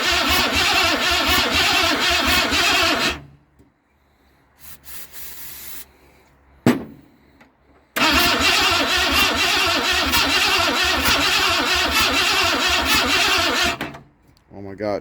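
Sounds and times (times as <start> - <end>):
engine starter cranking: 0.0 - 3.4, 8.0 - 14.1.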